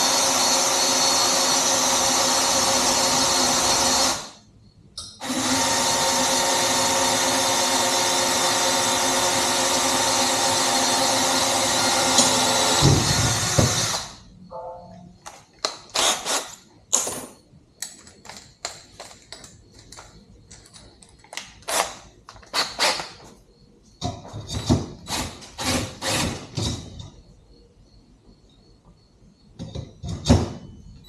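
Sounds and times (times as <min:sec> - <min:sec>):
electric drill boring into steel: 0:00.0 - 0:04.4, 0:05.2 - 0:14.2
sharp metallic clicks and clinks: 0:14.9 - 0:23.2.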